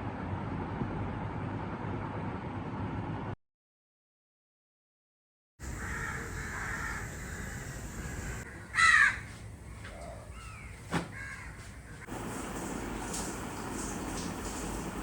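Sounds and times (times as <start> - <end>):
crow cawing: 5.6 - 12.1
outdoor background noise: 5.6 - 15.0.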